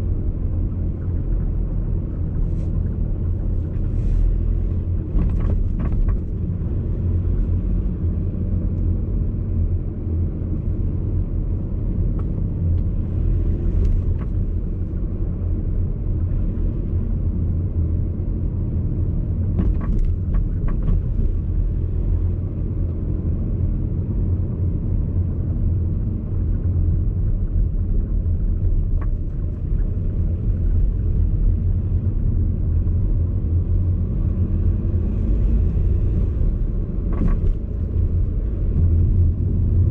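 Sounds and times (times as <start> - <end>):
low road rumble in car: 0.0 - 39.9
suspension clicks and knocks: 4.9 - 6.8, 19.5 - 21.6, 37.0 - 39.8.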